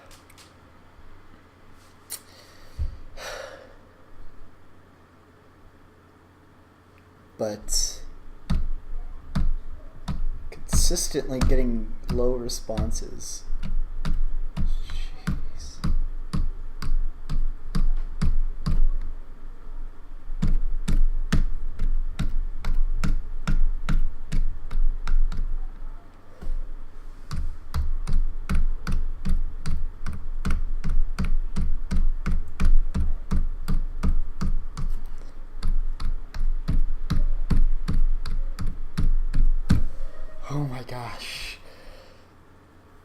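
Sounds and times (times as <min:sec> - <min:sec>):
low hum: 0:00.0 - 0:43.0
fast keyboard typing: 0:09.3 - 0:19.1, 0:20.4 - 0:25.6, 0:27.3 - 0:39.8.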